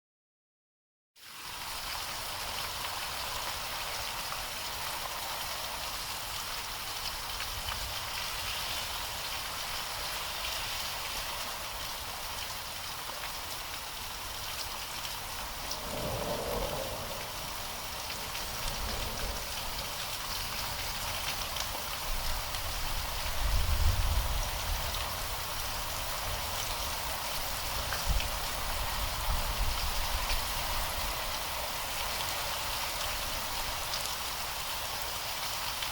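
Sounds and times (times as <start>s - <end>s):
heavy rain: 1.2s - 35.9s
thunder rolling: 15.3s - 22.4s
sharp thunder clap: 15.6s - 21.0s.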